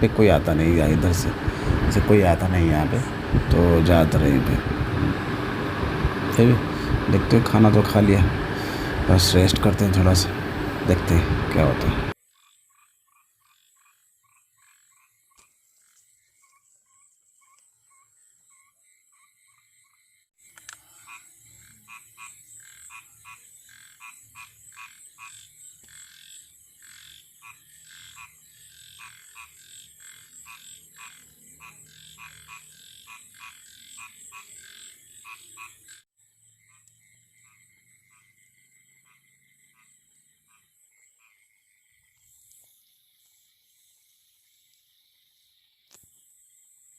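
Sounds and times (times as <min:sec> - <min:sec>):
high-pitched drone: 0:00.0 - 0:12.2
frogs croaking: 0:00.0 - 0:46.9.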